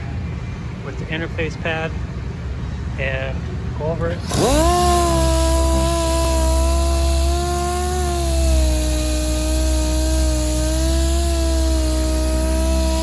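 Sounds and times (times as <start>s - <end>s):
sander whining: 3.8s - 13.0s
sanding hiss: 4.1s - 13.0s.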